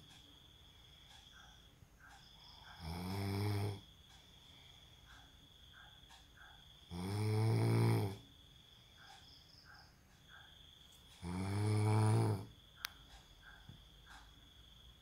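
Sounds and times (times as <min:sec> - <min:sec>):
man snoring: 0:02.8 - 0:03.9, 0:06.9 - 0:08.3, 0:11.2 - 0:12.6.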